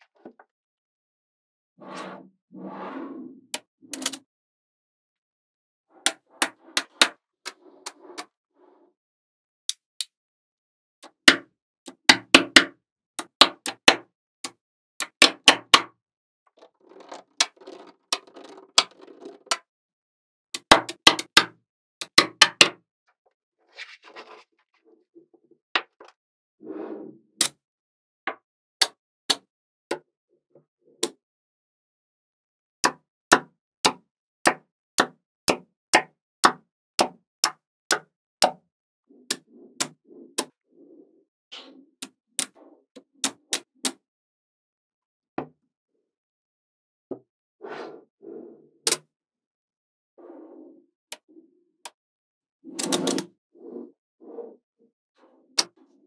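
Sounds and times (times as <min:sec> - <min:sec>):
balls rolling and rattling: 0:16.5 - 0:19.6.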